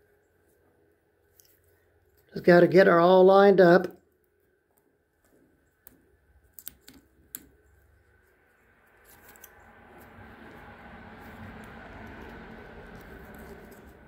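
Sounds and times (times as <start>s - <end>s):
small metal parts clicking: 5.8s - 7.5s.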